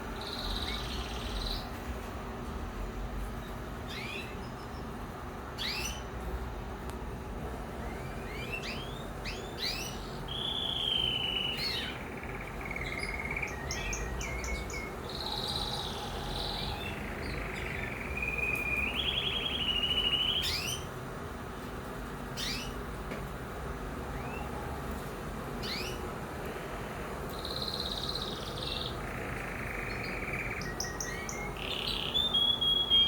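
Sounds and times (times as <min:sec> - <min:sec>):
canary singing: 0:00.1 - 0:01.8, 0:03.5 - 0:05.0, 0:05.6 - 0:06.1, 0:07.7 - 0:20.9, 0:22.3 - 0:22.8, 0:24.1 - 0:24.8, 0:25.6 - 0:26.1, 0:27.3 - 0:33.0.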